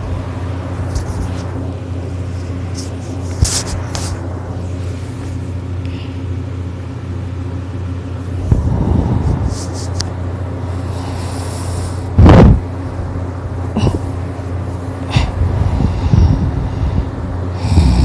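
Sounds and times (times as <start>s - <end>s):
steady low hum: 0.0s - 18.0s
person snoring: 10.7s - 12.1s, 17.5s - 18.0s.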